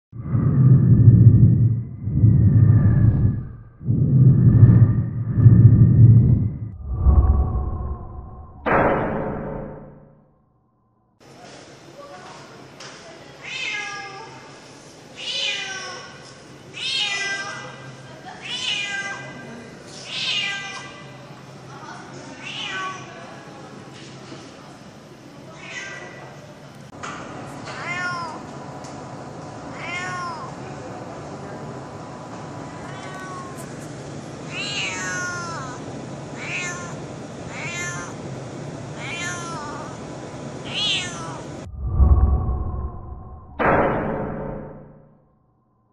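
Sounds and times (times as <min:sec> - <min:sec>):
loud low thud: 0:07.8 - 0:10.0, 0:41.8 - 0:44.9
cat meowing: 0:27.8 - 0:28.4, 0:29.7 - 0:30.6, 0:32.8 - 0:33.7, 0:34.5 - 0:35.8, 0:36.4 - 0:38.2, 0:39.0 - 0:40.0, 0:40.7 - 0:41.5.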